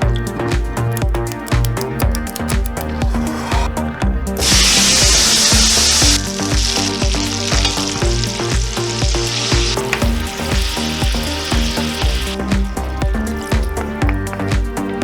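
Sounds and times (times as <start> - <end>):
background music with steady beat: 0.0 - 15.0
food sizzling in hot oil: 4.4 - 13.9.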